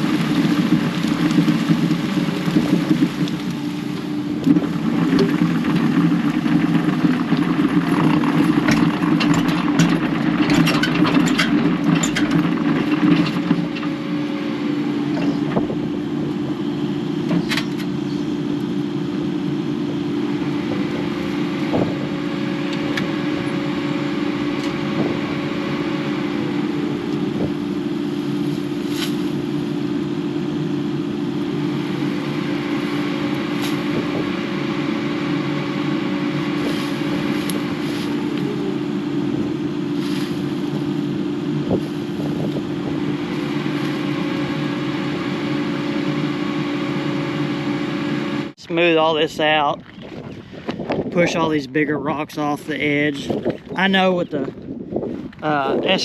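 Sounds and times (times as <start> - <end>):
cracks and clatters of rock: 0.0 - 14.0
diesel engine running under load: 0.0 - 56.0.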